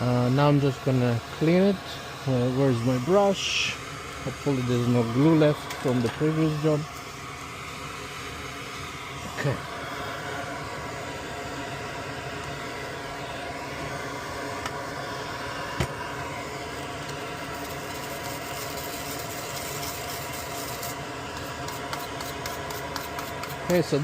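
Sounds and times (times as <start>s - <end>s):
steady mechanical hum: 0.0s - 24.0s
brush scrubbing circuit board: 17.5s - 24.0s.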